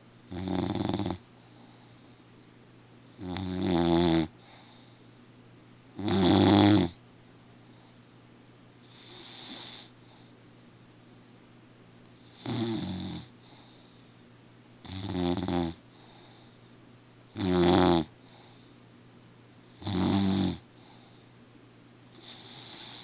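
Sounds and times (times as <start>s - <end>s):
rhythmic snoring: 0.3s - 2.0s, 3.2s - 5.0s, 6.0s - 7.0s, 8.8s - 10.0s, 12.2s - 14.0s, 14.8s - 16.5s, 17.3s - 18.6s, 19.6s - 21.2s, 22.1s - 23.0s.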